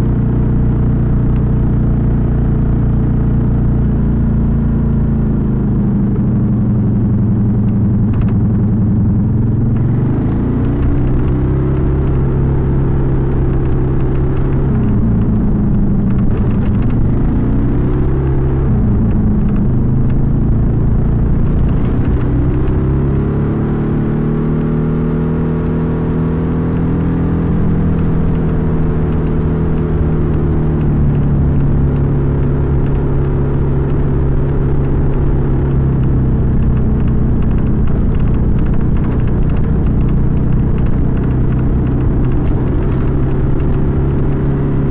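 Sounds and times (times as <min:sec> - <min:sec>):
scooter engine revving: 0:27.5 - 0:44.9.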